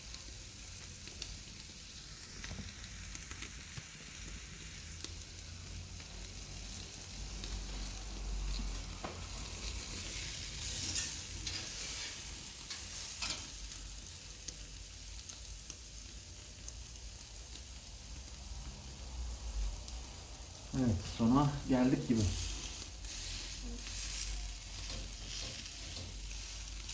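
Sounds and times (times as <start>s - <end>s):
steak sizzling on a grill: 0.0s - 26.9s.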